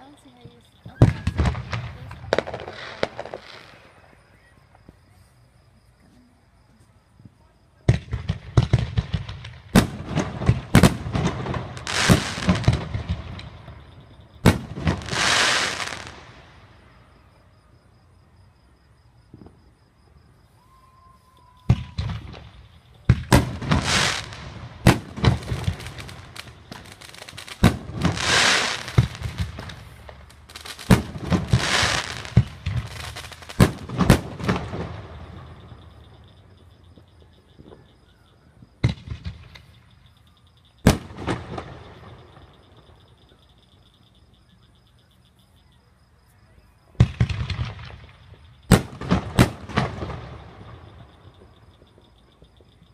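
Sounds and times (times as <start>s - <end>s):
fireworks bangs and crackling: 0.0s - 5.1s, 7.8s - 16.9s, 21.4s - 38.0s, 38.6s - 40.1s, 40.8s - 43.4s, 46.9s - 52.9s.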